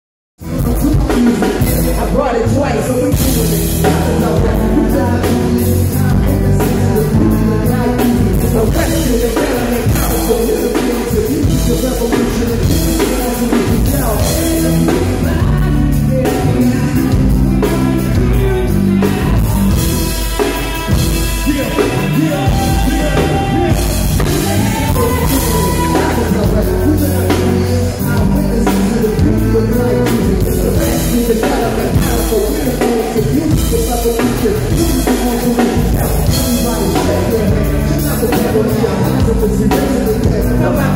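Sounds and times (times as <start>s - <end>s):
live band playing: 0.4s - 40.9s.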